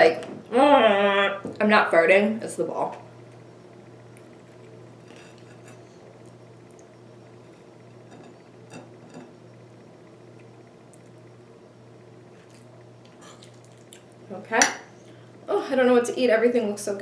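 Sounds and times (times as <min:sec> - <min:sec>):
low hum: 0:02.0 - 0:16.0
tableware clinking: 0:05.1 - 0:05.9, 0:07.5 - 0:09.4.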